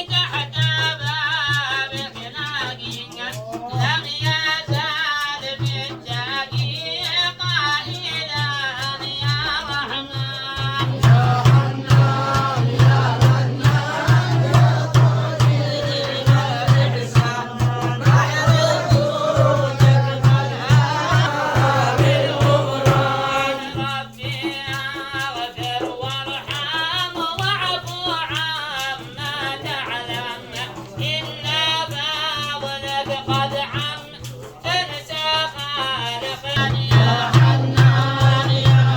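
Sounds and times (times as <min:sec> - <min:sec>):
steady rhythmic beat: 0:10.6 - 0:24.1, 0:36.6 - 0:38.9.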